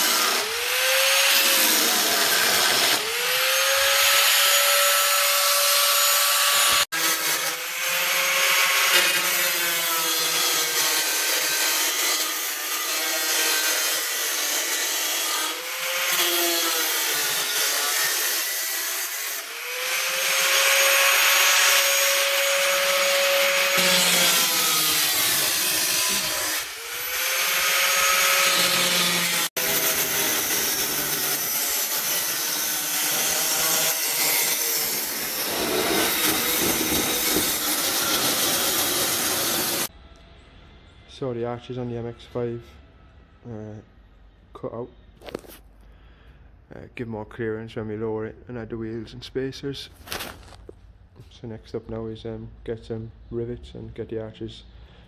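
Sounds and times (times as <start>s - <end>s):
power tool cutting sheet steel: 0.0s - 39.9s.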